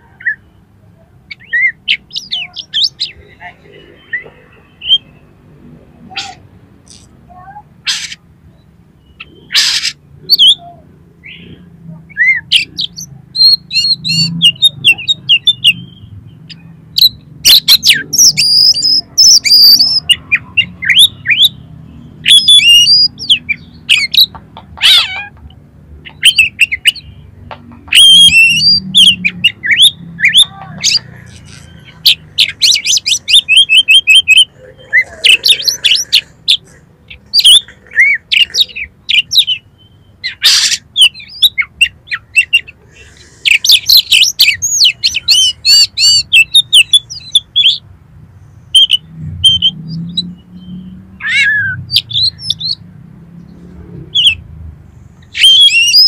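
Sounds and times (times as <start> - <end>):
bird singing whistles: 17.0 - 20.2, 22.2 - 24.3, 27.9 - 31.0, 55.3 - 56.0.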